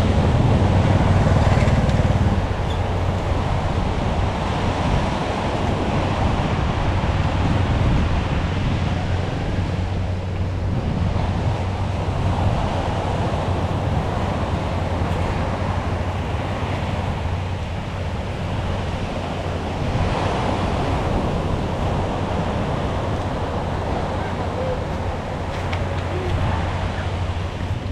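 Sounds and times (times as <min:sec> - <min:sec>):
sea waves washing onto beach: 0:00.0 - 0:27.9
wind rumbling on microphone: 0:00.0 - 0:27.9.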